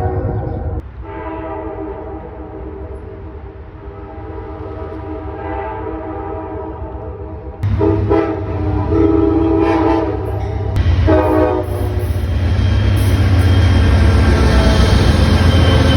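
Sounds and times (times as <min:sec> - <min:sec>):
train rumbling close by: 0:00.0 - 0:15.9
locomotive air horn blasts: 0:01.0 - 0:02.7, 0:07.6 - 0:12.2.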